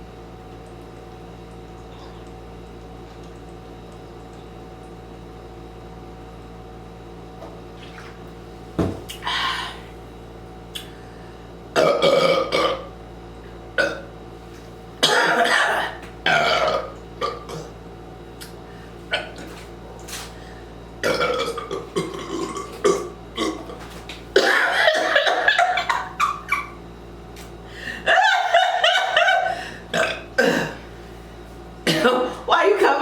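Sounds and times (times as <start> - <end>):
person belching: 11.8 - 12.9, 13.8 - 14.1, 15.0 - 17.7, 21.0 - 23.8, 29.9 - 30.8.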